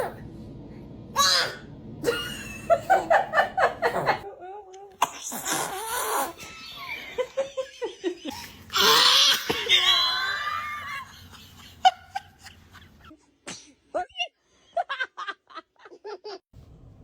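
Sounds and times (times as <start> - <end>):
people laughing: 6.4 - 8.4.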